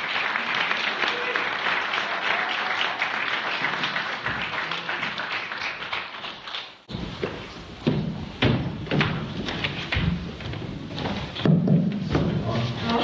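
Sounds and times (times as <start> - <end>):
audience applauding: 0.0 - 6.9.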